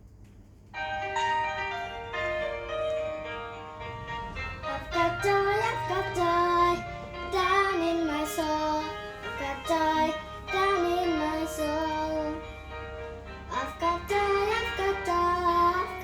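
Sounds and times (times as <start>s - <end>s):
backing accompaniment: 0.8s - 16.0s
child singing: 4.6s - 12.5s, 13.5s - 16.0s.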